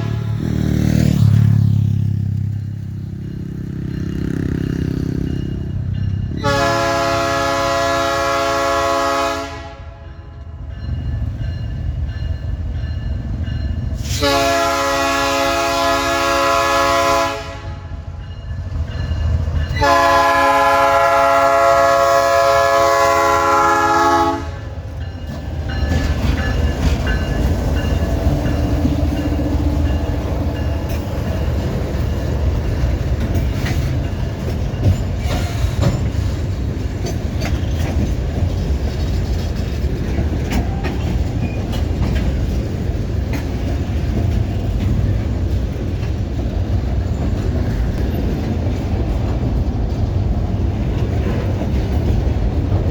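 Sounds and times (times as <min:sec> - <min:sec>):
train horn blasts: 0:00.0 - 0:00.6, 0:06.3 - 0:10.6, 0:14.0 - 0:18.2, 0:19.7 - 0:24.9
train rumbling on rails: 0:00.0 - 0:52.9.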